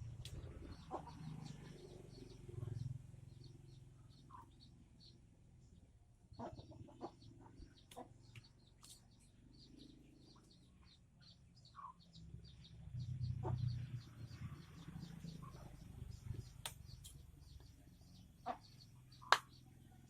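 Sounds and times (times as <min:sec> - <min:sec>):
high chirping calls: 0:06.3 - 0:20.0.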